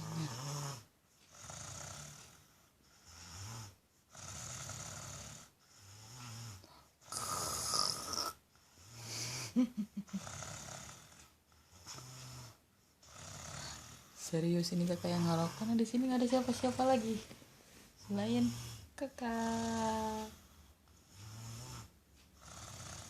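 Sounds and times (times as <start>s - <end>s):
child snoring: 0.0s - 17.2s, 18.1s - 23.0s.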